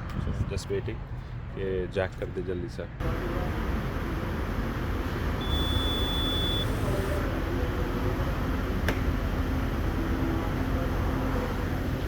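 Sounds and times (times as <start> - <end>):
low rumble of vehicles: 0.0 - 12.0
high electronic beep: 5.4 - 6.8.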